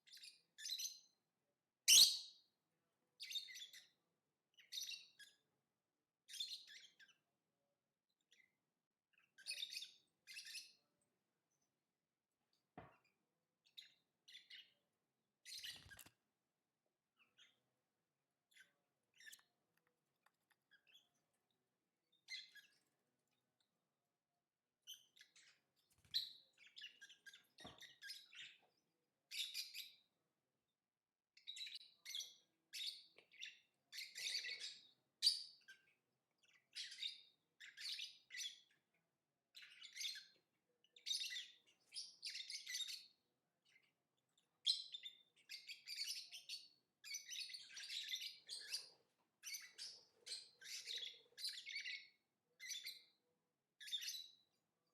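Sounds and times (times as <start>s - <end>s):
lovebirds chirping: 1.9s - 2.4s, 39.6s - 53.2s.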